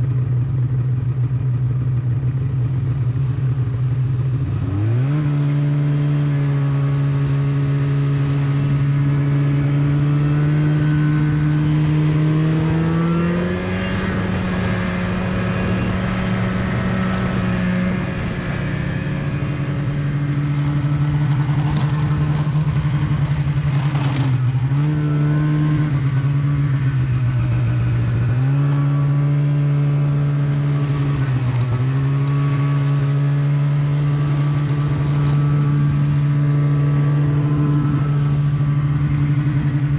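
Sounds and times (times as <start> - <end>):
snowmobile engine running: 0.0 - 39.9.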